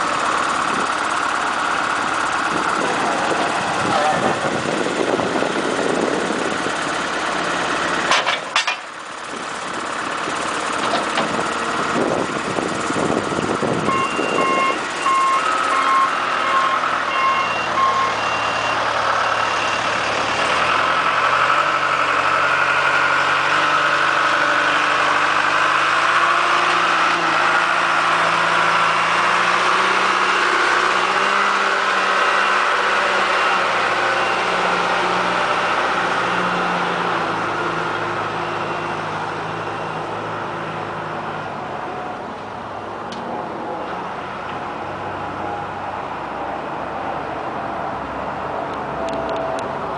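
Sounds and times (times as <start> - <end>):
diesel engine running: 0.0 - 49.9
metal clank: 8.1 - 9.0
backup alarm beeping: 13.9 - 19.4.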